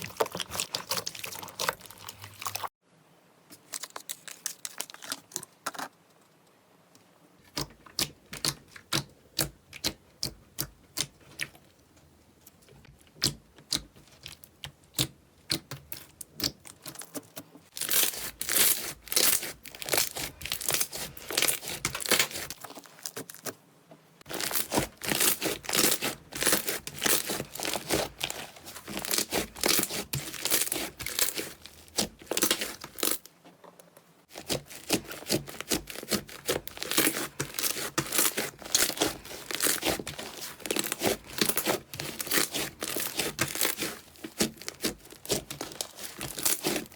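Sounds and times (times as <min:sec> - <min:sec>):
slime crackling and popping: 0:13.2 - 0:23.4, 0:24.3 - 0:33.2, 0:34.3 - 0:46.9.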